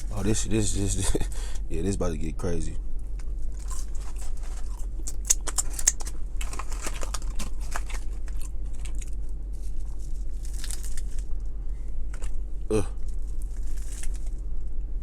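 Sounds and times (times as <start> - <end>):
steady low hum: 0.0 - 15.0
paper wrappers crinkling: 3.6 - 11.3, 13.0 - 14.4.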